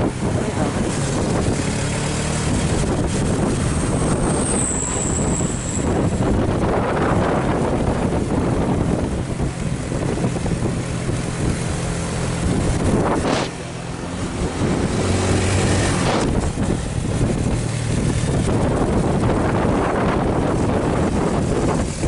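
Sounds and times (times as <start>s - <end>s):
heavy truck engines straining: 0.0s - 22.0s
wind buffeting microphone: 0.0s - 22.0s
brief swoosh: 13.0s - 13.6s.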